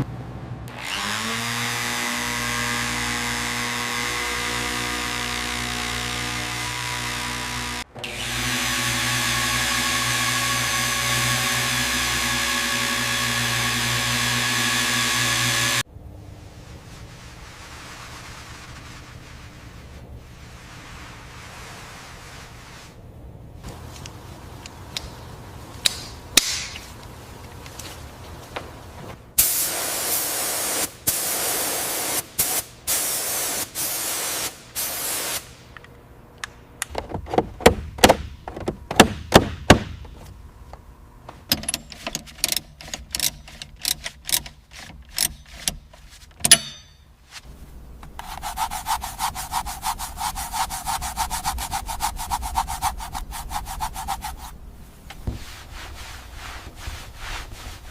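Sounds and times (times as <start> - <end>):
fast rasping sanding: 48.2 - 54.6.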